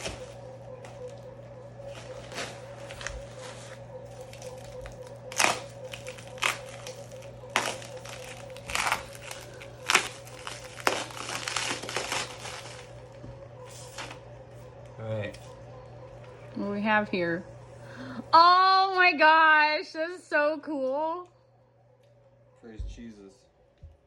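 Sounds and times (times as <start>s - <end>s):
packaging crinkling and rustling: 0.0s - 14.2s.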